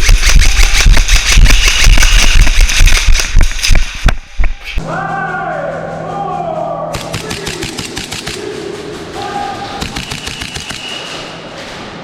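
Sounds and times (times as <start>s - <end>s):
airsoft guns firing full auto: 0.0s - 4.0s, 6.9s - 8.6s, 9.6s - 11.3s.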